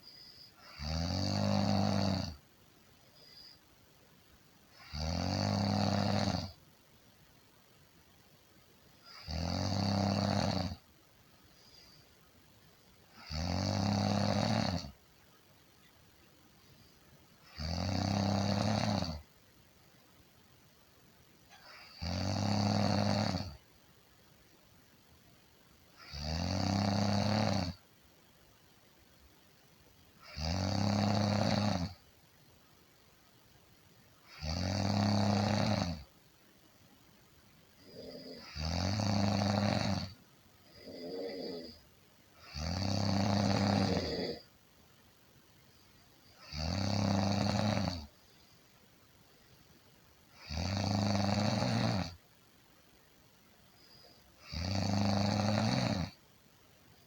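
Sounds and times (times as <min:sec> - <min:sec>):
person snoring: 0:00.6 - 0:02.4, 0:04.8 - 0:06.6, 0:09.1 - 0:10.8, 0:13.1 - 0:15.0, 0:17.4 - 0:19.3, 0:21.5 - 0:23.6, 0:26.0 - 0:27.8, 0:30.2 - 0:32.0, 0:34.2 - 0:36.1, 0:37.8 - 0:41.8, 0:42.4 - 0:44.5, 0:46.4 - 0:48.1, 0:50.4 - 0:52.2, 0:54.4 - 0:56.2.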